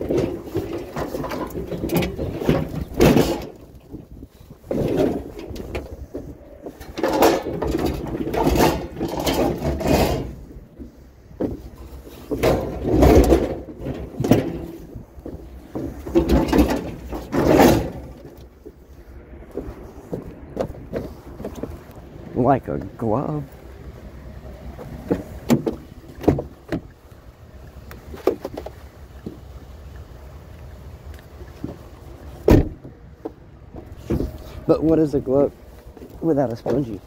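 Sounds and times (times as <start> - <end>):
objects scraping rattling and knocking: 0.0 - 18.9, 19.5 - 23.7, 24.5 - 26.9, 31.6 - 37.0.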